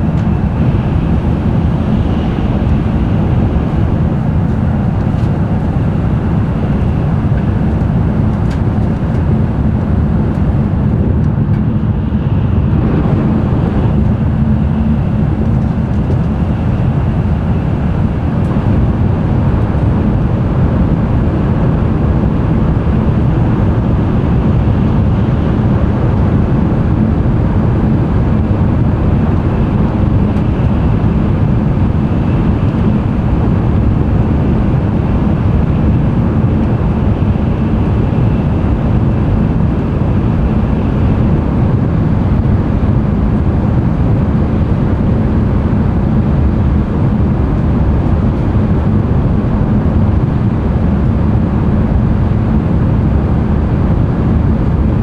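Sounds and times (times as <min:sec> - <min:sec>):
train cabin rumble: 0:00.0 - 0:20.9.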